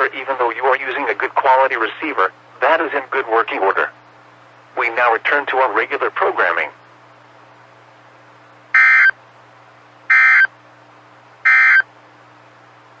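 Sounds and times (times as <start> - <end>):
radio hum and hiss: 0.0 - 7.2
warbling data tone bursts: 8.8 - 9.1, 10.1 - 10.5, 11.5 - 11.8.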